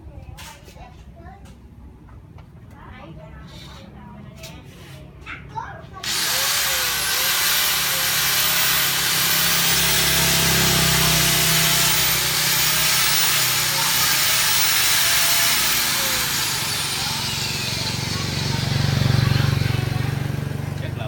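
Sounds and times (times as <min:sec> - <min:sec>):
electric cutter motor whir: 0:06.0 - 0:20.7.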